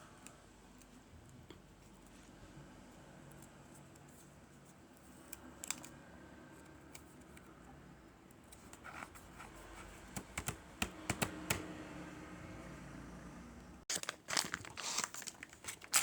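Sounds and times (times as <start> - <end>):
packaging rustle: 13.9 - 16.0.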